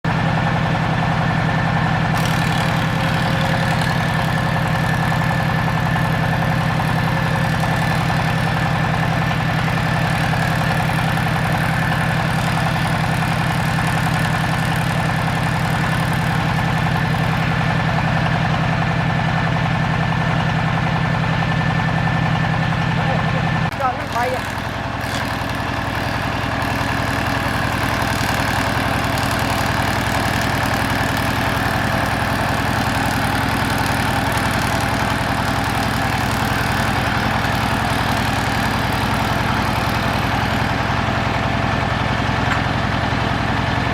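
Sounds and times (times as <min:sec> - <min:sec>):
machine humming: 0:02.2 - 0:18.4, 0:23.7 - 0:43.9.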